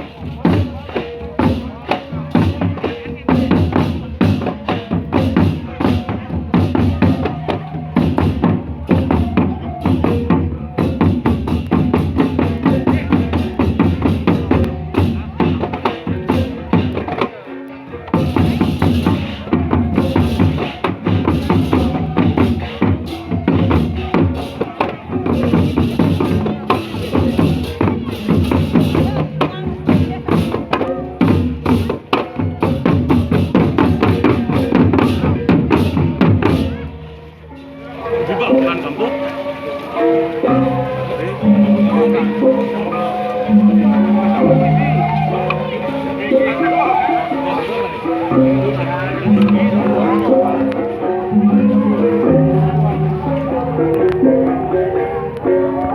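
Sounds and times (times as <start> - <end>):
driving drum beat: 0.0 - 37.4, 38.0 - 55.9
sustained pitched tones: 38.1 - 55.9.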